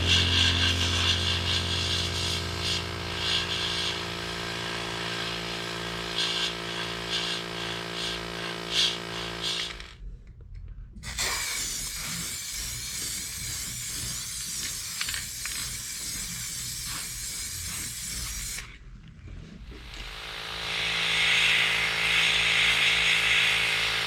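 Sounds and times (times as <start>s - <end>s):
electric power tool running: 0.0s - 10.0s, 19.6s - 24.0s
grinding bursts: 0.0s - 10.0s, 11.8s - 24.0s.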